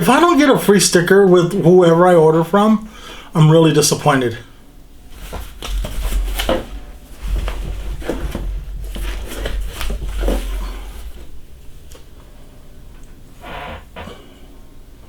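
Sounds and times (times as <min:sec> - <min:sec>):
low rumbling bumps: 0:05.0 - 0:14.0
cardboard packaging rustling: 0:05.1 - 0:12.1.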